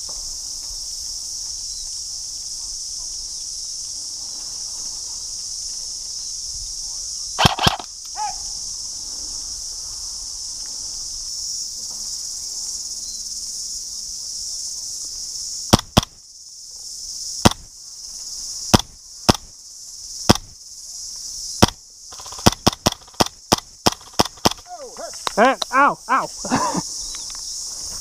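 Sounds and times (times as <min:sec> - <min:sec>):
insect chorus: 0:00.0 - 0:28.0
airsoft gun shots: 0:07.4 - 0:07.9, 0:15.7 - 0:16.2, 0:20.3 - 0:20.5, 0:21.6 - 0:24.6.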